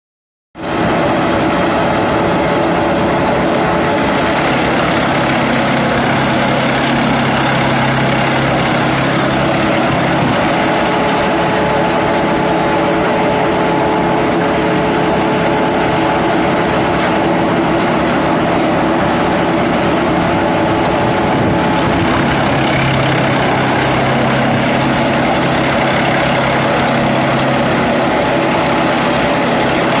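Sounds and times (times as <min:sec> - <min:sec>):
wood chipper running: 0:00.6 - 0:30.0.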